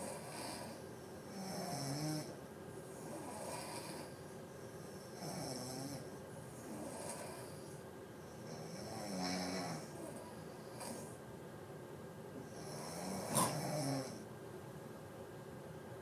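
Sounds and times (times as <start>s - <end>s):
person snoring: 0.0s - 2.3s, 3.0s - 4.2s, 5.1s - 6.0s, 6.6s - 7.8s, 8.4s - 11.2s, 12.5s - 14.2s
breath: 6.9s - 7.8s
sharp snort: 13.0s - 14.1s.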